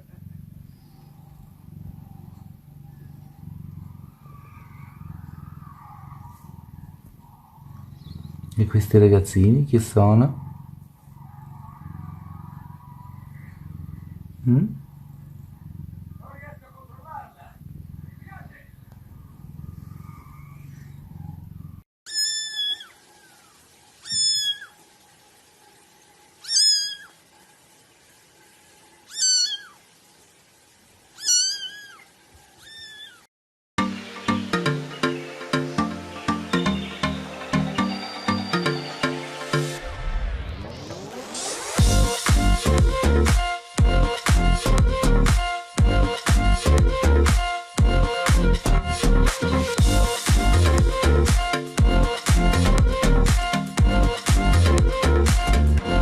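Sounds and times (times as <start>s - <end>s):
cat purring: 0.0s - 27.5s, 34.6s - 56.0s
kitten meowing: 2.0s - 8.7s, 22.1s - 23.0s, 24.0s - 24.7s, 26.4s - 27.1s, 29.1s - 29.8s, 31.2s - 32.0s, 32.6s - 33.3s
low rumble: 39.8s - 56.0s.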